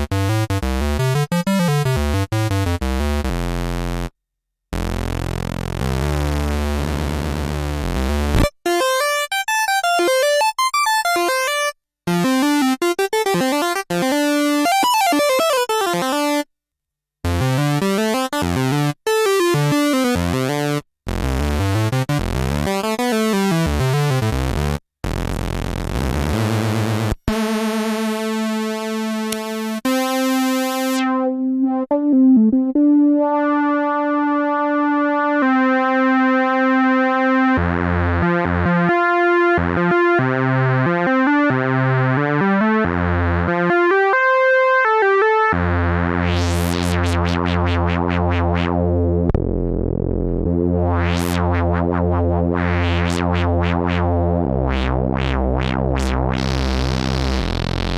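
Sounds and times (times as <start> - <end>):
low pulsing bass note: 45.7 - 57.9.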